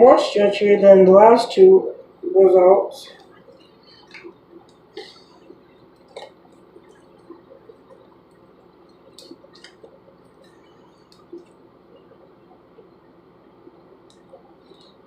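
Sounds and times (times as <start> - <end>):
slime squelching: 3.2 - 11.6.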